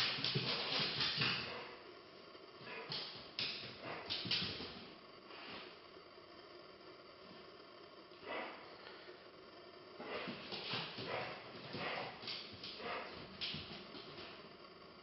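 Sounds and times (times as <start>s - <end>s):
dog sniffing: 10.0s - 12.2s, 12.8s - 13.2s.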